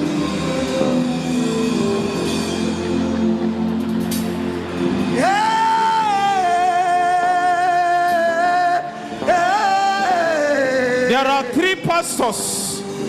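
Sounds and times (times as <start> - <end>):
person singing long high notes: 5.1 - 12.9.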